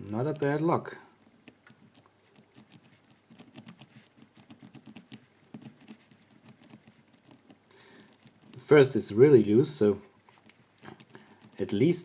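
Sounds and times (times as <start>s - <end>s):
padlock number wheels clicking: 6.5s - 8.7s, 10.8s - 12.0s.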